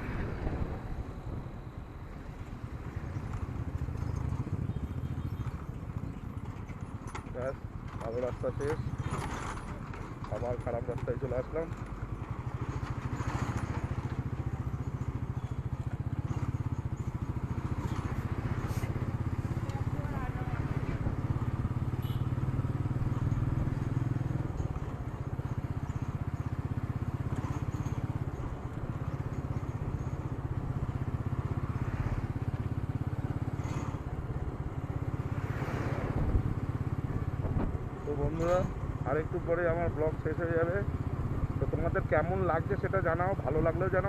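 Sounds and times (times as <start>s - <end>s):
wind noise: 0.0s - 2.3s
road noise: 0.0s - 44.0s
motorcycle engine running: 2.3s - 44.0s.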